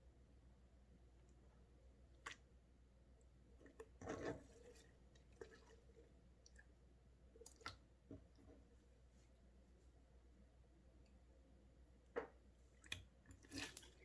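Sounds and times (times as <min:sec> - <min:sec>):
wet clicks and squelches of slime: 0:07.4 - 0:07.8, 0:12.8 - 0:14.0.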